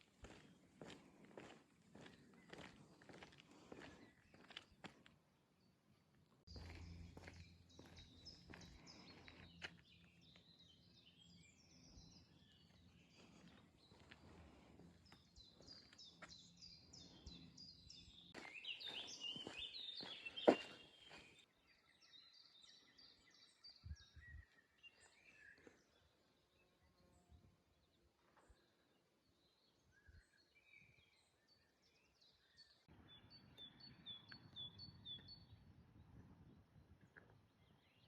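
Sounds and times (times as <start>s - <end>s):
birds chirping and singing: 6.5s - 26.2s.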